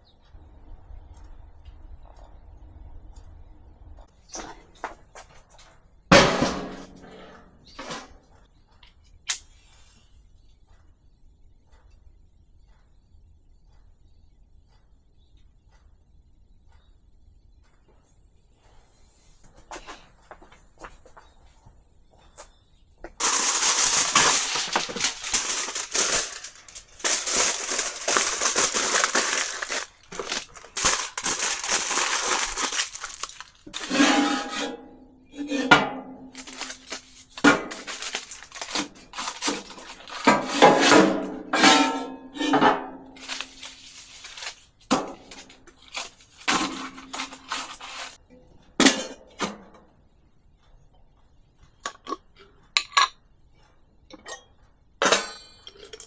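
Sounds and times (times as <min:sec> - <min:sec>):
dishes and pot clattering: 0:23.2 - 0:34.8, 0:54.2 - 0:56.0.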